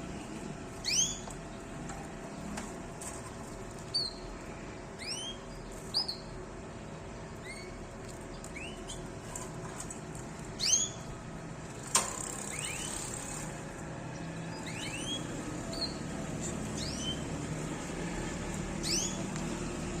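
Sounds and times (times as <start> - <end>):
canaries chirping: 0.7 - 1.8, 3.0 - 6.4, 7.4 - 11.2, 12.3 - 19.5.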